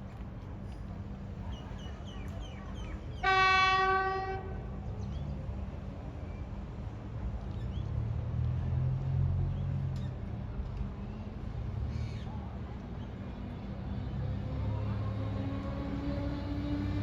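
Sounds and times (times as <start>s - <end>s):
train horn: 3.2s - 4.7s.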